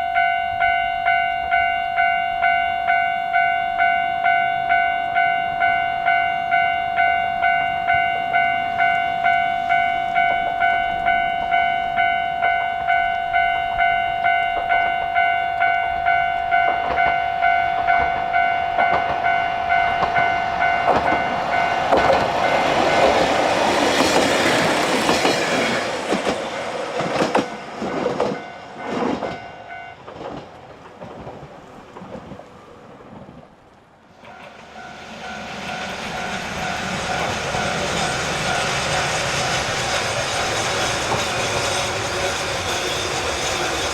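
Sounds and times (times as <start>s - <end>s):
train passing: 0.0s - 43.9s
wheels clicking over rail joints: 13.7s - 43.9s.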